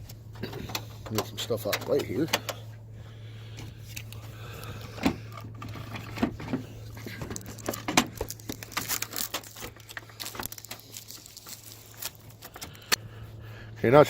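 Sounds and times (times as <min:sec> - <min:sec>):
steady low hum: 0:00.0 - 0:14.0
rustling: 0:03.7 - 0:13.0.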